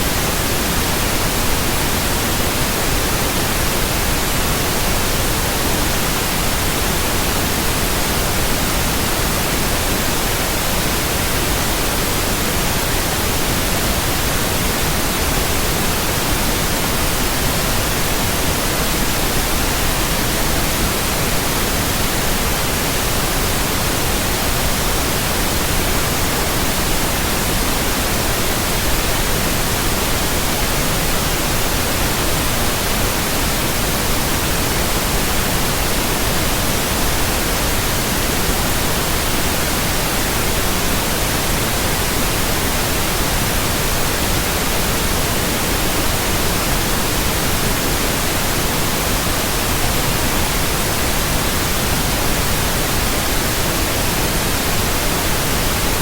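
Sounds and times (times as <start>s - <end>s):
steady white noise hiss: 0.0s - 56.0s.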